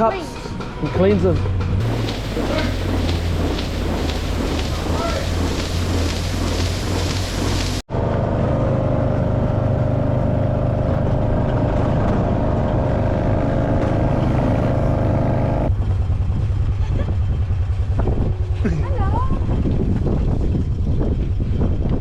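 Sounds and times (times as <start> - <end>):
machine drone with held tones: 1.6 - 16.6.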